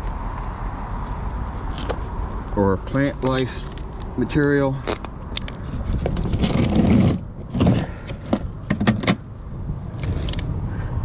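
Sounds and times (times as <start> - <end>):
steady low rumble: 0.0 - 11.0
magnet and rope clicking and knocking: 3.2 - 9.1, 9.9 - 10.5.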